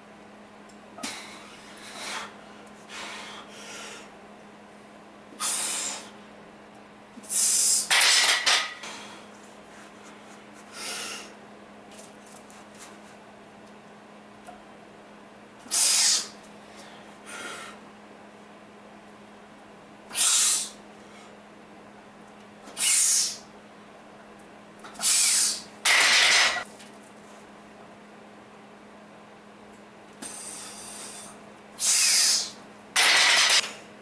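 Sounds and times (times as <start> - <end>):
faint steady hum: 0.0 - 34.0
person breathing hard: 1.0 - 4.2, 10.2 - 11.4, 15.8 - 17.8, 30.2 - 32.6.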